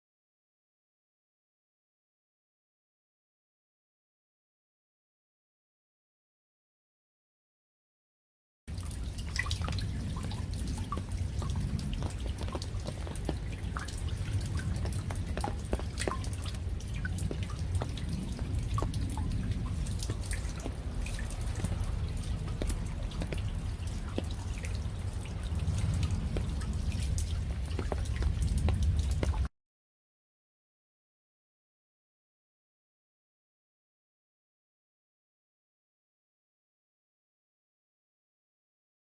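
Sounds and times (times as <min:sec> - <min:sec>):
low rumble: 0:08.7 - 0:29.5
raindrops dripping: 0:08.7 - 0:29.5.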